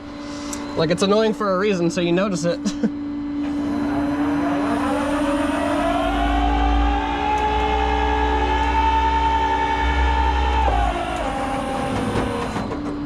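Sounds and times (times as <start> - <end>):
tow truck engine revving: 3.4 - 12.9.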